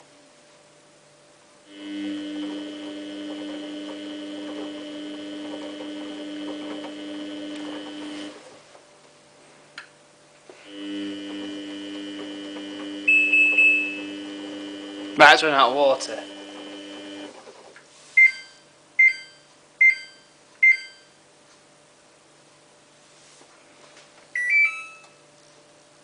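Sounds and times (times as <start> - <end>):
washing machine hum: 0.0 - 19.3.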